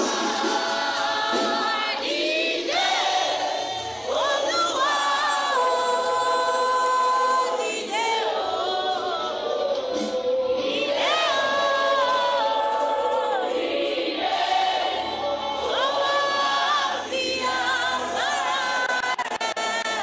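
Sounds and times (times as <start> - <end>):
group singing worship: 0.0 - 20.0.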